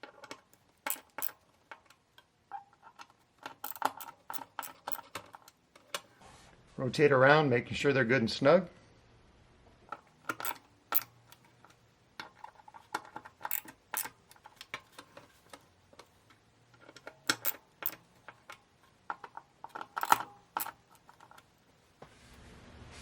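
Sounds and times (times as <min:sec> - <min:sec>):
socket ratchet clicking: 0:00.0 - 0:02.0, 0:02.8 - 0:06.1, 0:09.9 - 0:21.5.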